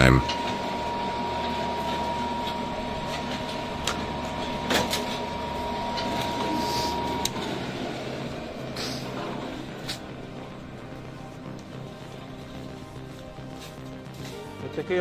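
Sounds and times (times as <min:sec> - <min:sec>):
machine motor whining: 0:00.3 - 0:14.6.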